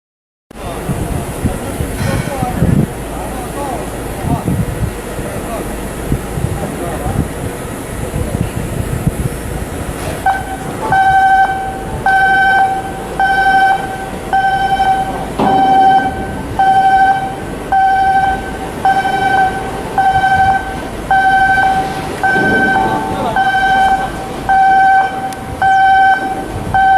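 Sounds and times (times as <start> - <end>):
background machinery noise: 0.5 - 26.9
electronic alarm beeping: 10.2 - 26.9.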